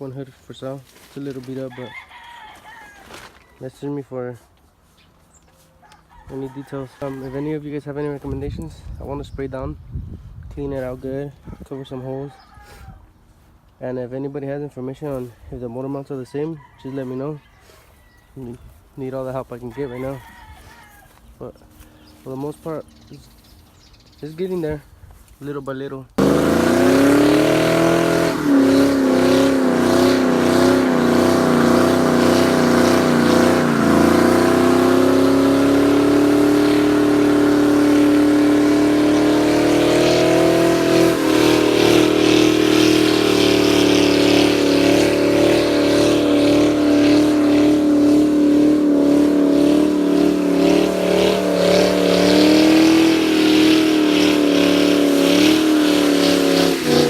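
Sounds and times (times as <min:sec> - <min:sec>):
car engine at high revs: 0:26.2 - 0:57.0.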